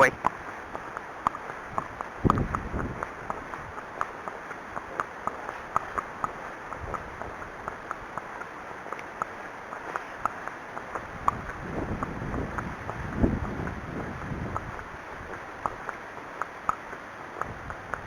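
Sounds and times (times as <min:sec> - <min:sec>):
hooves clip-clopping on hard ground: 0:00.0 - 0:18.0
wind rumbling on microphone: 0:00.0 - 0:18.0.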